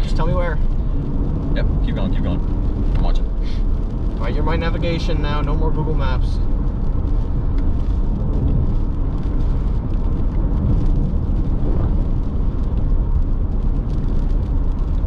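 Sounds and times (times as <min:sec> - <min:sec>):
road and wind rumble in car: 0:00.0 - 0:15.0.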